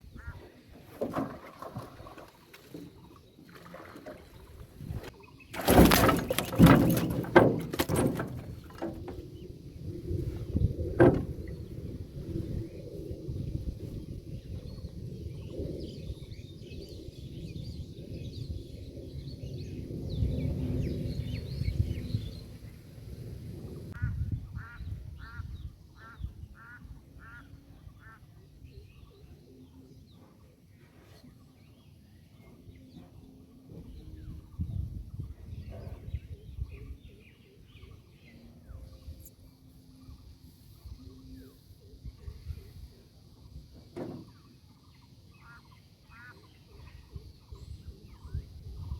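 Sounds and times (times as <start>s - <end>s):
low steady rumbling: 4.2s - 28.0s.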